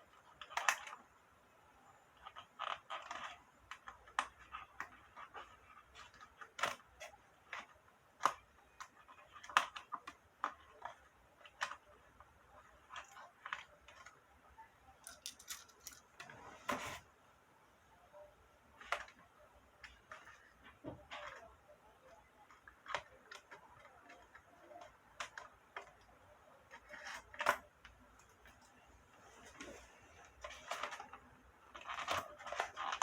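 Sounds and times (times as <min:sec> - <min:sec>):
pins clicking and tapping: 0:15.0 - 0:16.2.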